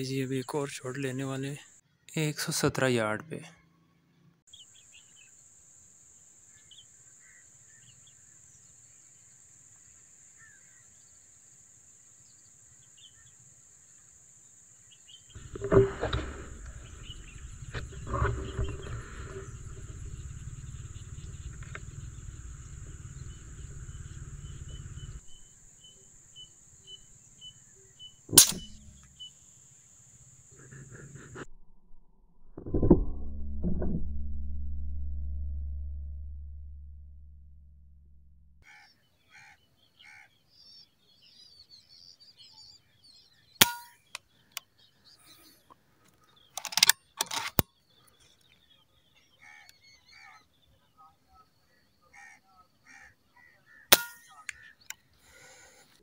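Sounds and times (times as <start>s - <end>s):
high insect whine: 4.7s - 31.4s
low rumble: 15.4s - 25.4s, 31.5s - 38.6s
air rifle firing: 28.3s - 29.1s.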